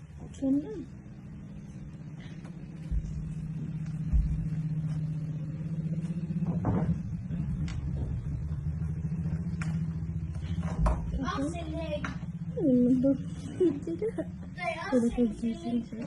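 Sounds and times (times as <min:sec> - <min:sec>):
engine humming: 0:00.0 - 0:16.0
low thumps: 0:02.7 - 0:05.0, 0:06.0 - 0:11.3.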